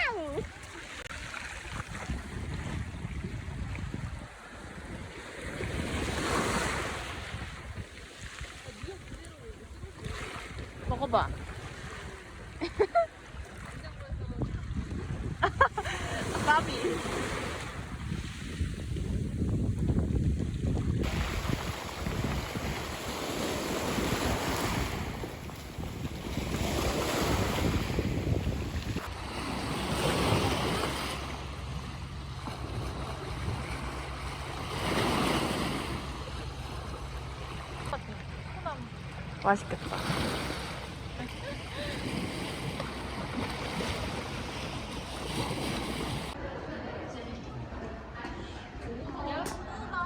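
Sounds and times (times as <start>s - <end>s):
sea water rushing: 0.0s - 46.7s
wind buffeting microphone: 1.6s - 12.6s, 13.6s - 39.0s.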